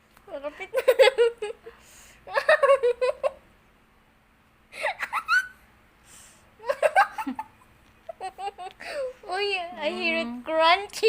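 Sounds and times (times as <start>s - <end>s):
faint breath: 1.6s - 2.3s, 6.0s - 6.6s.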